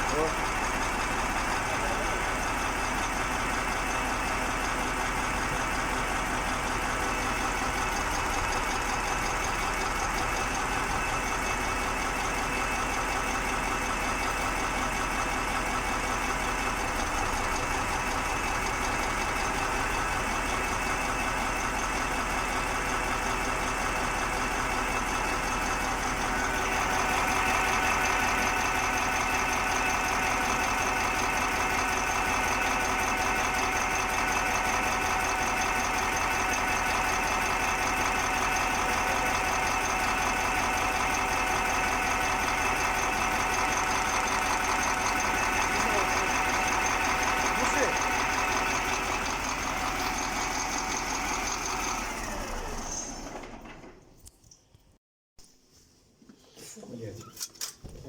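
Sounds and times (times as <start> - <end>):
diesel engine idling with knock: 0.0 - 53.9.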